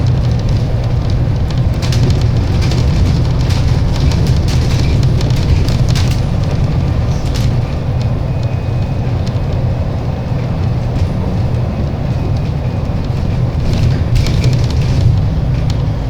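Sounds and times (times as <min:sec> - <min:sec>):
brief rattles: 0:00.0 - 0:08.5
bus engine and road rumble: 0:00.0 - 0:16.0.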